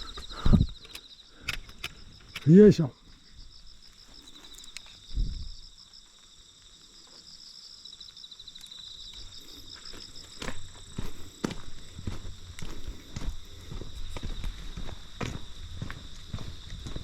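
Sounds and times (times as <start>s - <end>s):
insects chirping in trills: 0.0s - 17.0s.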